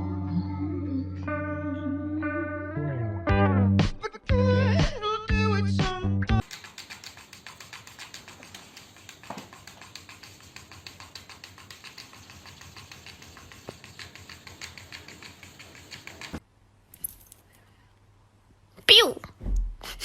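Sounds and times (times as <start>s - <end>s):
rapid tapping clicks: 6.4s - 16.4s.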